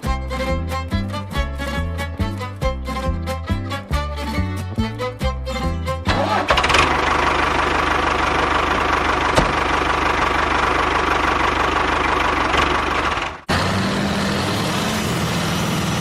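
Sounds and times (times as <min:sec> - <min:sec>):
fiddle music: 0:00.0 - 0:10.8
tractor engine chugging: 0:00.0 - 0:16.0.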